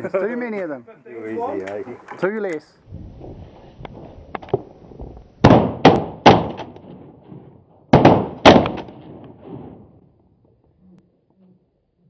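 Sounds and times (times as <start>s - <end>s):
shotgun blasts with echo: 5.4s - 10.0s.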